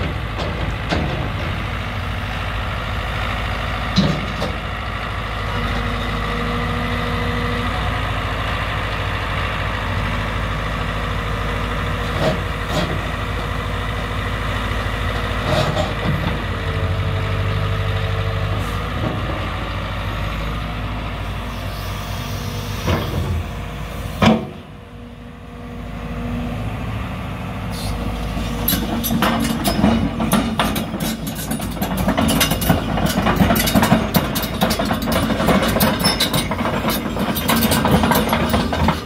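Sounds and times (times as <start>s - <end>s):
excavator diesel engine humming: 0.0s - 39.0s
metallic clattering and clanking: 28.4s - 39.0s.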